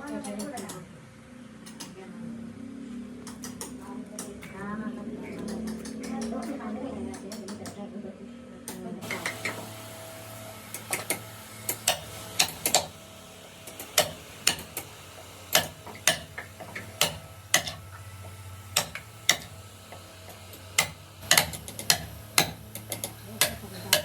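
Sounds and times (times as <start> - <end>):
hand tools tapping wood: 3.2 - 4.4, 13.7 - 24.0.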